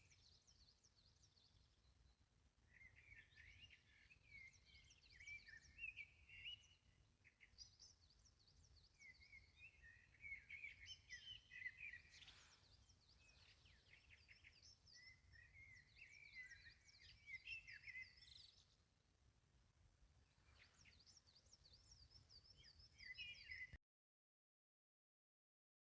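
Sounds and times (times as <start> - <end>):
birds chirping and trilling: 2.7 - 6.8, 7.4 - 18.8, 20.4 - 23.8.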